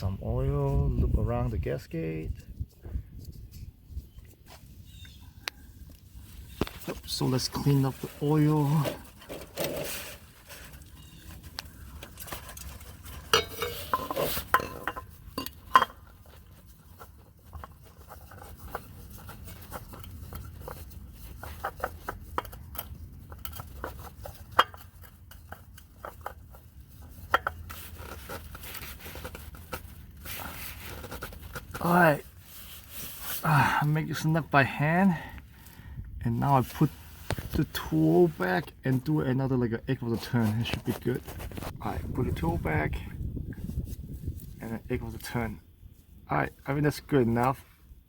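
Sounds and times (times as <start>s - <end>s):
rubbing: 6.0s - 33.5s
metal hand tools clinking: 13.2s - 16.0s.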